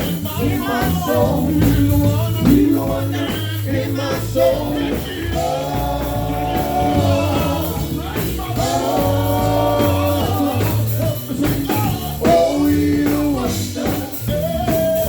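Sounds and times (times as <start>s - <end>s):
backing band: 0.0s - 15.0s
gospel group singing: 0.0s - 15.0s.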